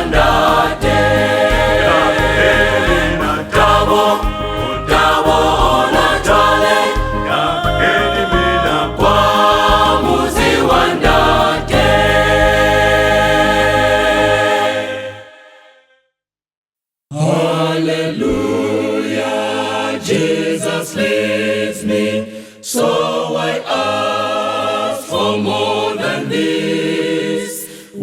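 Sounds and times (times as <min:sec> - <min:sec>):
steady bass accompaniment: 0:00.0 - 0:14.9
choir singing gospel: 0:00.0 - 0:15.9, 0:17.2 - 0:28.0.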